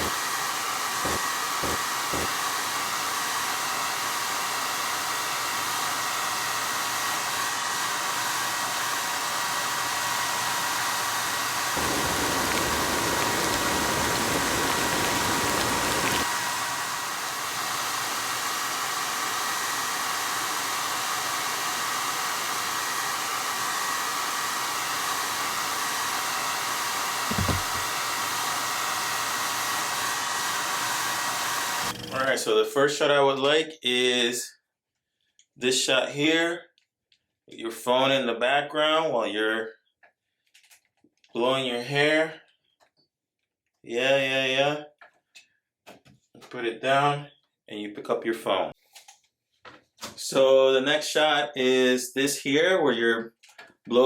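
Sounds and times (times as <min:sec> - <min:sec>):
hair dryer running: 0:00.0 - 0:31.9
low thump: 0:27.3 - 0:27.9.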